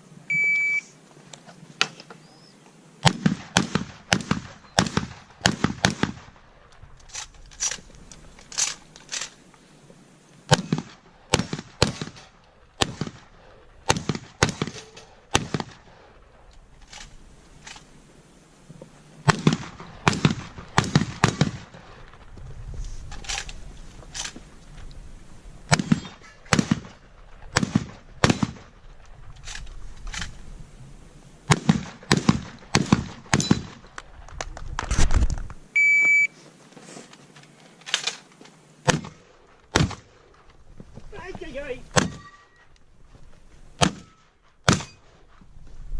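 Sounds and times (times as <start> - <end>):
short electronic beep: 0.3 - 0.9, 35.8 - 36.3
shotgun shots echoing: 3.0 - 6.6, 10.5 - 16.1, 19.2 - 21.8, 25.7 - 28.8, 31.5 - 33.9, 38.8 - 40.1, 41.5 - 42.4, 43.8 - 45.2.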